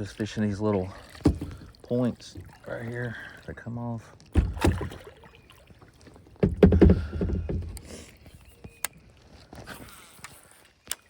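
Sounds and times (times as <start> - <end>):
knocking against kayak hull: 1.2 - 1.7, 6.4 - 7.8.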